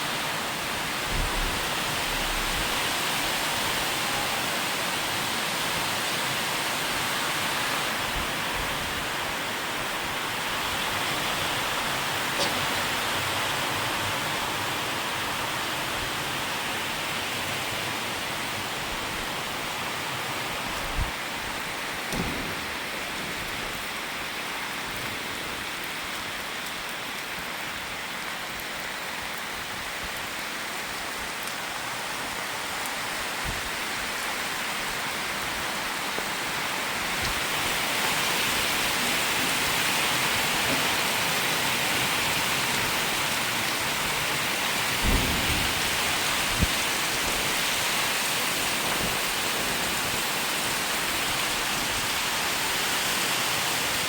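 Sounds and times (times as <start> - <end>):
steady rain: 0.0 - 54.0
low thumps: 1.1 - 1.6.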